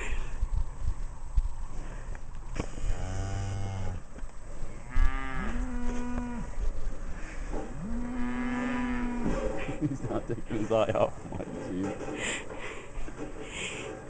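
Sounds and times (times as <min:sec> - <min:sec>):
cattle mooing: 0:02.7 - 0:04.0, 0:04.8 - 0:06.6, 0:07.7 - 0:09.4.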